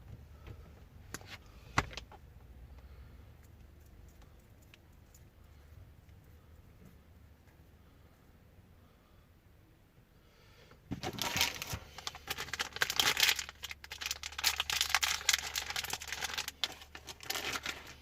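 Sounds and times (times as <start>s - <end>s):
crinkling and clicking handling noise: 0.0s - 2.5s, 3.4s - 5.4s, 10.9s - 18.0s.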